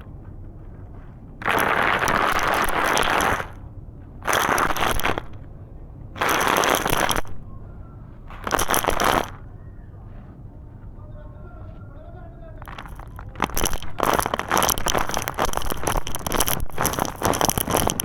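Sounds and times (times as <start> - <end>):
concrete crunching and crackling: 0.4 - 3.6, 4.2 - 5.5, 6.2 - 7.4, 8.3 - 9.4, 12.6 - 18.0.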